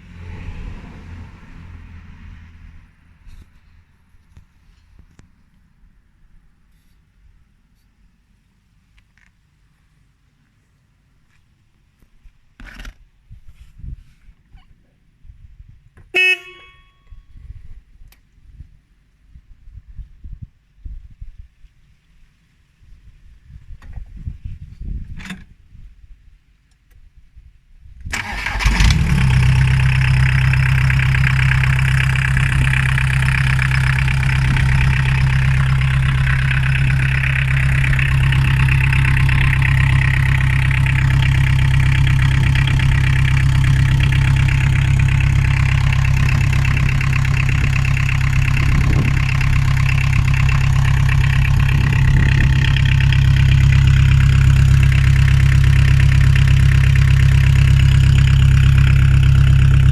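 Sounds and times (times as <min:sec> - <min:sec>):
diesel engine starting and idling: 0:00.0 - 0:05.2, 0:28.1 - 0:59.9.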